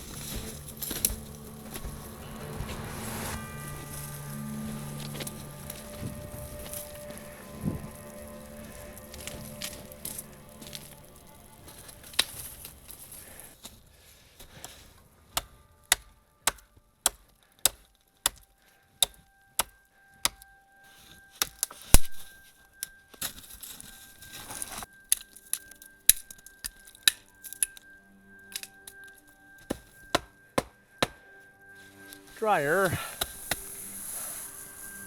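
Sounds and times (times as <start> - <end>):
hatchet chopping wood: 15.4 - 20.4, 29.7 - 31.2.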